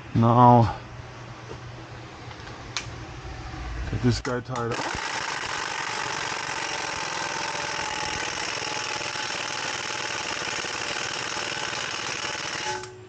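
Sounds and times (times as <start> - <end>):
impact wrench hammering: 4.7 - 13.0.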